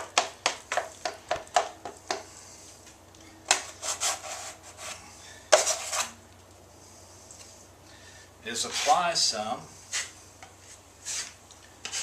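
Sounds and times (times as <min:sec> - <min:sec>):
drywall knife scraping: 0:03.5 - 0:06.2, 0:11.0 - 0:12.0.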